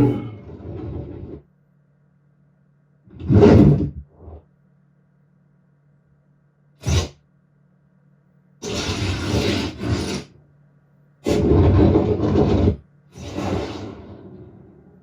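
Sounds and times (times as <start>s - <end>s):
harsh rasping noise bursts: 8.6s - 10.3s.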